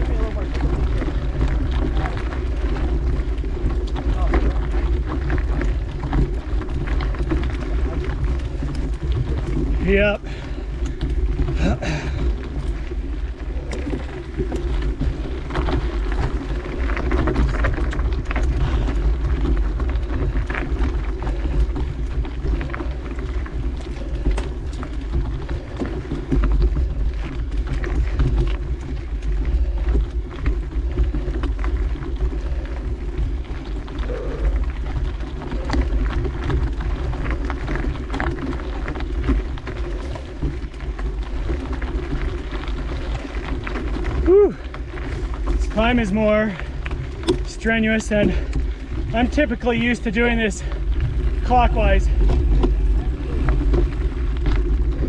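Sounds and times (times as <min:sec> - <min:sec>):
clicks and crunches on dirt trail: 0:00.0 - 0:55.0
wind buffeting microphone: 0:00.0 - 0:55.0.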